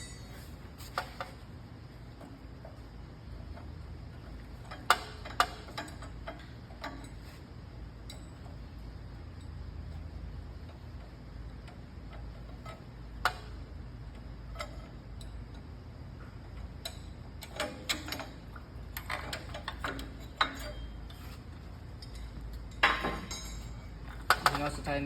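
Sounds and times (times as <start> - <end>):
small metallic clicks and clinks: 4.6 - 7.3, 8.0 - 8.6, 14.5 - 15.7, 16.8 - 25.0.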